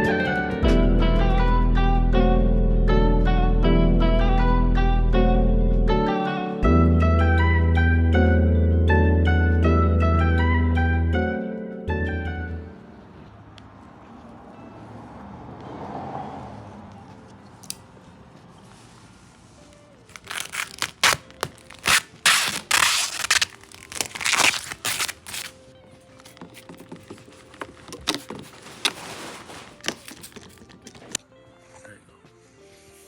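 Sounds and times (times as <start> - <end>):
plastic film crackling: 20.0 - 31.2.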